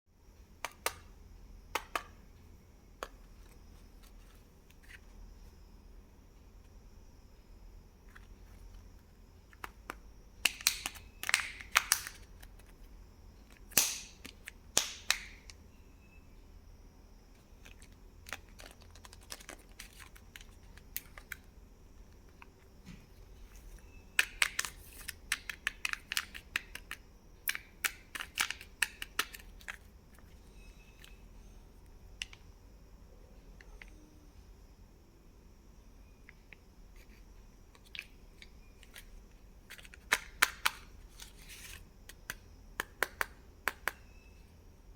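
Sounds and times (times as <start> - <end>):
steady low hum: 0.1 - 44.9
plastic packaging crinkling: 17.6 - 21.4.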